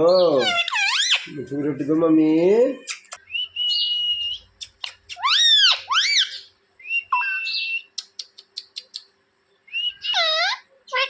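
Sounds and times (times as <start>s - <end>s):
parrot whistling: 2.9s - 9.0s, 9.7s - 10.6s
parrot clicking: 8.0s - 9.1s.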